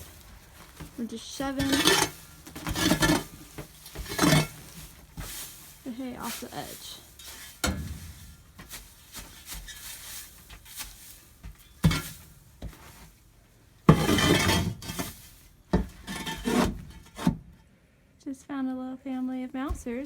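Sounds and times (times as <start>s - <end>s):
hay rustling: 0.0s - 13.8s, 14.6s - 15.7s
hay thudding on wood: 0.0s - 17.0s.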